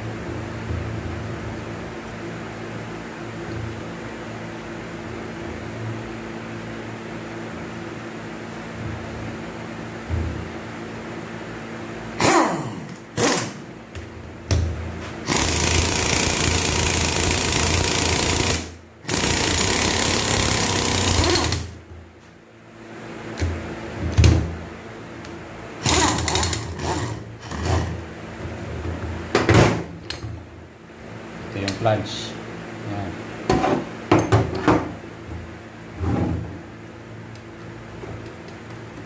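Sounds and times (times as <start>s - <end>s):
pneumatic impact wrench hammering: 12.2s - 13.7s, 15.2s - 21.8s, 25.8s - 28.0s.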